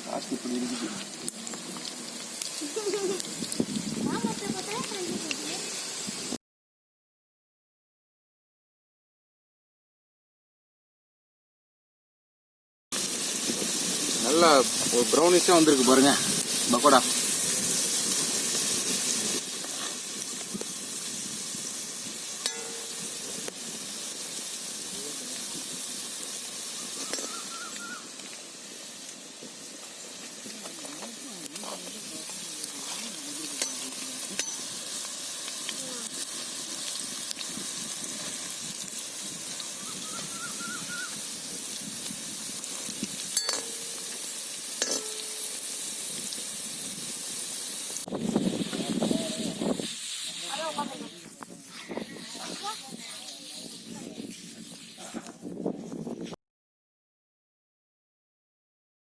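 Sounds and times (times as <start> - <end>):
fritters sizzling in hot oil: 0.0 - 6.4, 13.0 - 56.3.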